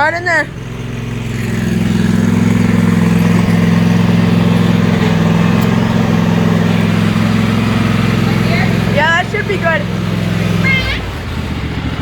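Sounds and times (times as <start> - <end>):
engine running steadily: 0.0 - 12.0.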